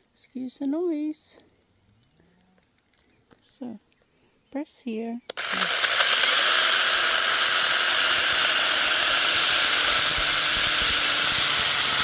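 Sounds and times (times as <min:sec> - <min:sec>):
electric saw running: 0:05.3 - 0:12.0.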